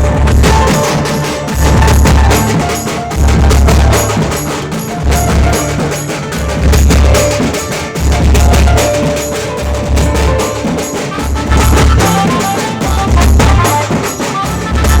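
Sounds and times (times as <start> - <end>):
bass drum booms: 0.0 - 9.0
fast drum strokes: 0.0 - 15.0
held melody line: 0.0 - 15.0.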